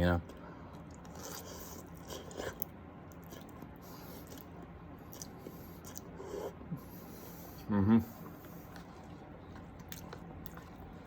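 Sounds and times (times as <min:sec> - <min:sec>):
person chewing noodles: 0:00.3 - 0:11.0.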